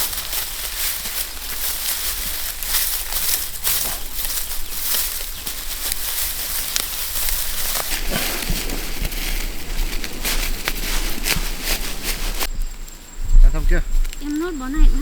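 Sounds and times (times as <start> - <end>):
dry rice stalks rustling: 0.0 - 15.0
stalks snapping: 0.1 - 11.9.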